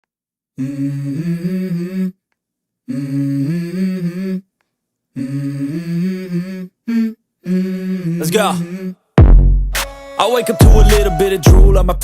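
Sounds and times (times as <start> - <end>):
person humming: 0.6 - 2.2, 5.2 - 9.0, 10.2 - 12.0.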